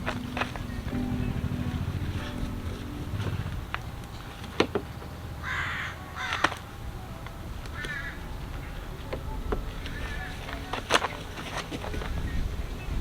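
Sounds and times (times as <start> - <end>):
crow cawing: 5.4 - 6.6, 7.8 - 8.3.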